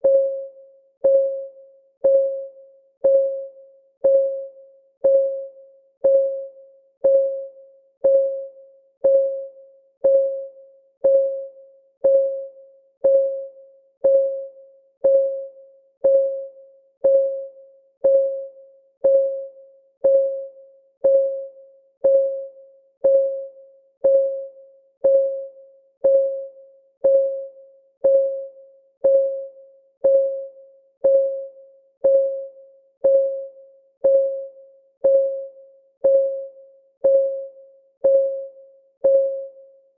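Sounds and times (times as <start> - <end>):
timer ticking: 1.0 - 39.5.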